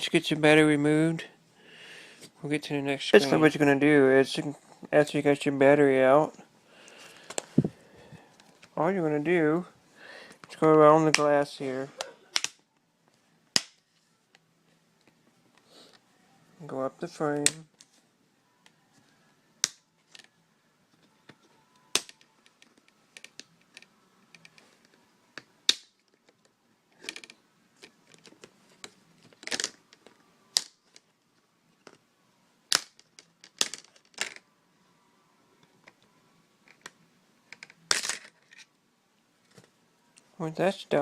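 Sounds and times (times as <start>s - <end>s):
plastic clips snapping: 12.0s - 12.6s.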